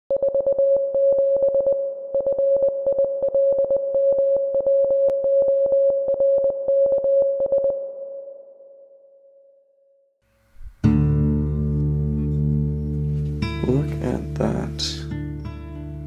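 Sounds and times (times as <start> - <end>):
morse code beeps: 0.1 - 8.4.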